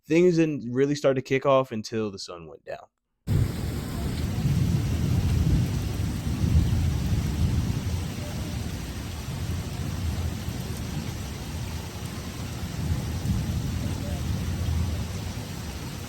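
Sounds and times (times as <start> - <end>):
steady rain: 3.3 - 16.0
thunder rolling: 3.3 - 16.0.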